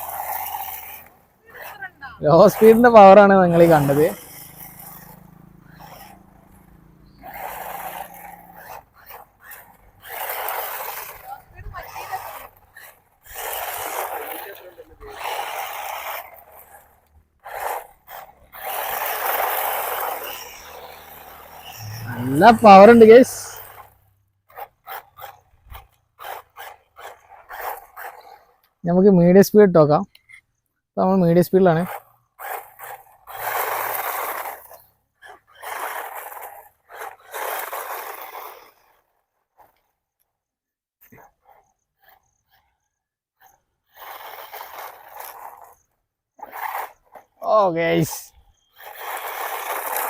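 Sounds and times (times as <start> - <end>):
rc car motor rasping hiss: 0.0 - 28.8, 31.3 - 40.0, 41.0 - 42.7, 43.4 - 50.0
tyres scrabbling over gravel: 31.9 - 39.8, 43.9 - 50.0.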